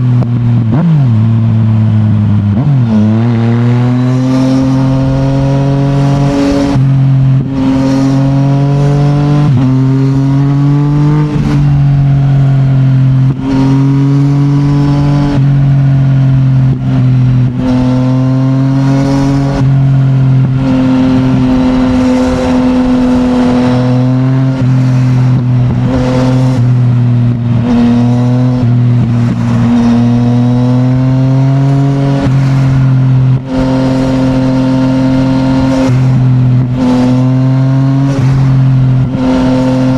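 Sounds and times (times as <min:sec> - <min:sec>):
motorcycle engine revving: 0:00.0 - 0:39.9.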